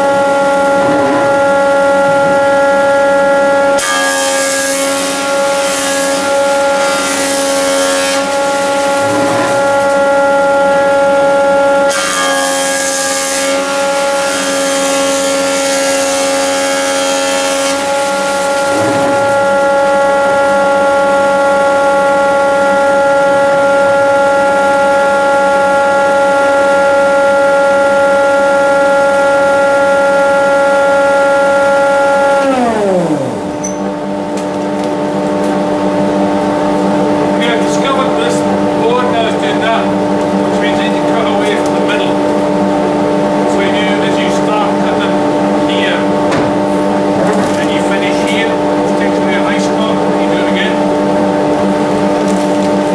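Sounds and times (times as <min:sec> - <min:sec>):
low machine hum: 0:00.0 - 0:52.9
planer whining: 0:00.0 - 0:52.9
board being planed: 0:00.1 - 0:23.8.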